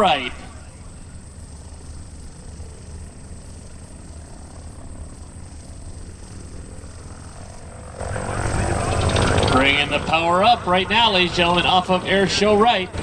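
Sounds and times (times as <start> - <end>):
radial aircraft engine rumbling: 0.0 - 13.0.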